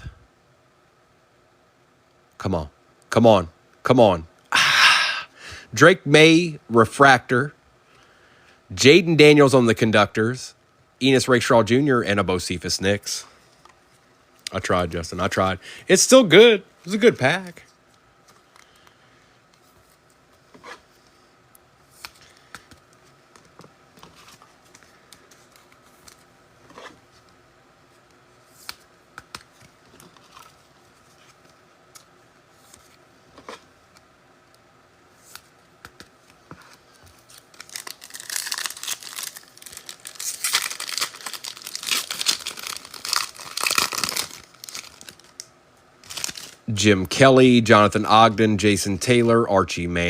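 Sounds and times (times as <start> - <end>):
foil wrapper tearing and crinkling: 37.0 - 46.6.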